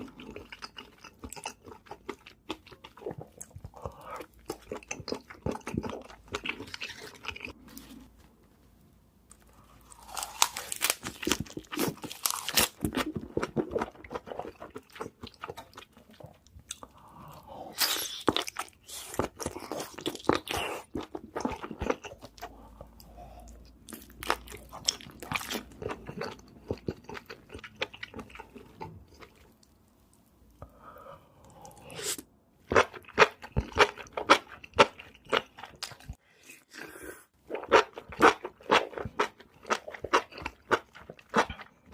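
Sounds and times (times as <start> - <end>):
chewing and crunching seafood: 0.0 - 8.1, 9.3 - 29.7, 32.7 - 36.2, 36.8 - 41.9.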